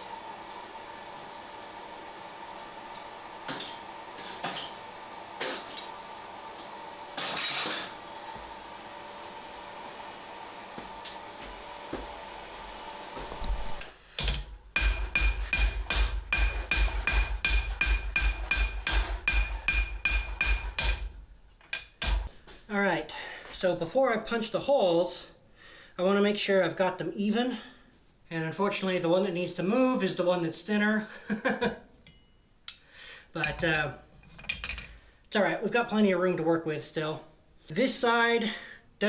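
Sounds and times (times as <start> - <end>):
hammer ringing on hot steel: 14.8 - 21.1.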